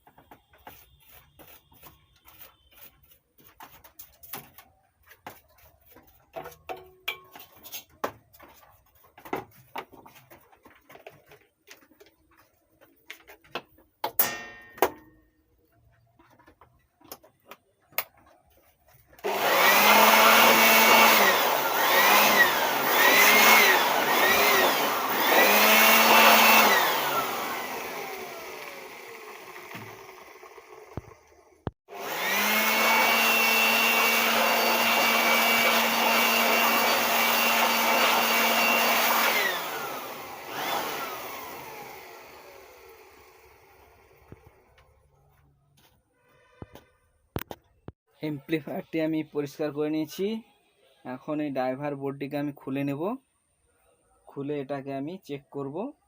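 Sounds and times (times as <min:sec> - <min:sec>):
electric blower motor: 0:19.2 - 0:44.9.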